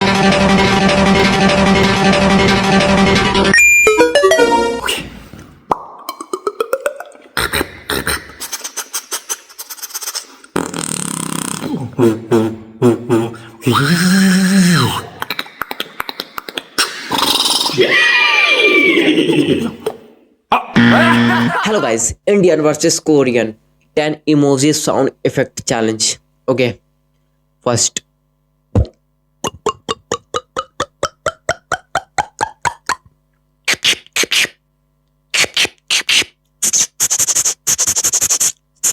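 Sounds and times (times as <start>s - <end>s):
beatboxing hissing tone: 4.8s - 17.8s, 28.7s - 34.6s, 35.3s - 38.9s
beatboxing clicks: 5.7s - 11.8s, 15.1s - 17.8s, 28.8s - 38.9s
beatbox low thump: 28.8s - 33.1s.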